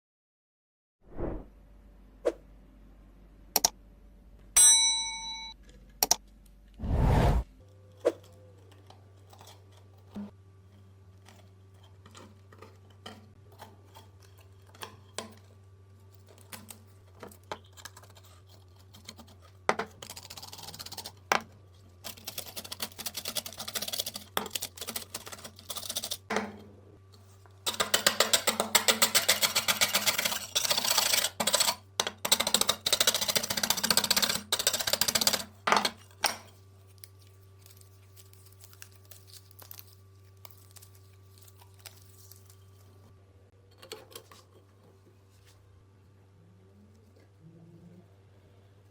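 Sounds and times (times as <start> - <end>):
fast scraping strokes: 6.8 - 7.4.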